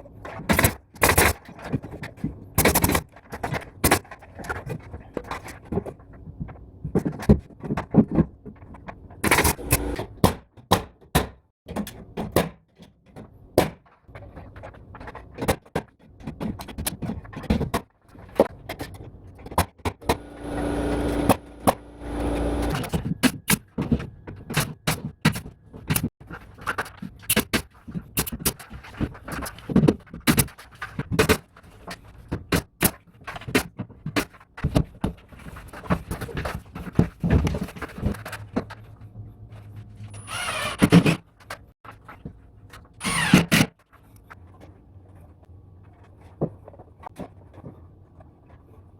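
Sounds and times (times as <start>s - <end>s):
machine running: 9.3s - 10.0s, 20.0s - 23.0s.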